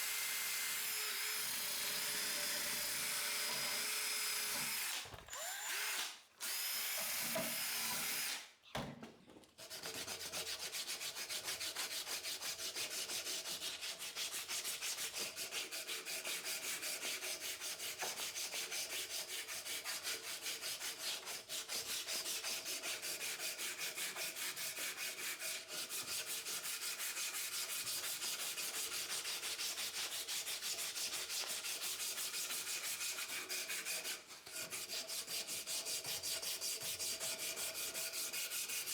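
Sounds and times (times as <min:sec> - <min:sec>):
power tool whirring: 0:00.0 - 0:08.5
sandpaper rubbing back and forth: 0:09.8 - 0:38.9.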